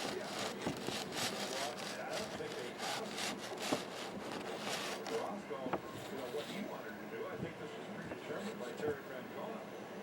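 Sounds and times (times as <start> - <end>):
packaging rubbing and scraping: 0.0 - 5.4.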